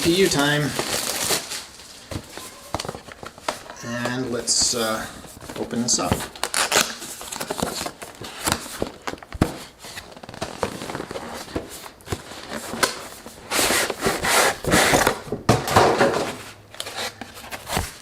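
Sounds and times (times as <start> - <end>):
plastic packaging crinkling: 0.0 - 15.1
cardboard taps and scrapes: 17.0 - 18.0.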